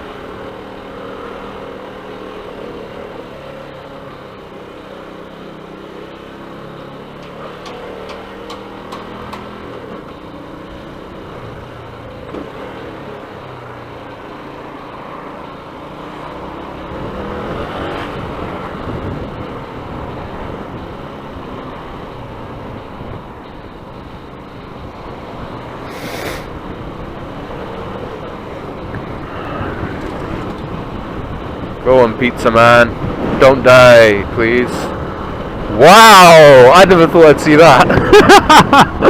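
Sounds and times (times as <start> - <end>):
rushing wind noise: 16.9 - 39.0
short hiss: 25.8 - 26.5.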